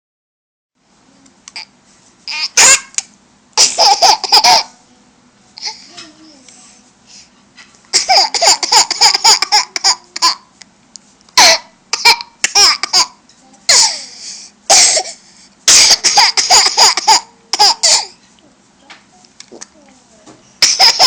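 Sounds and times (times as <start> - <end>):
young child laughing: 20.6 - 21.0.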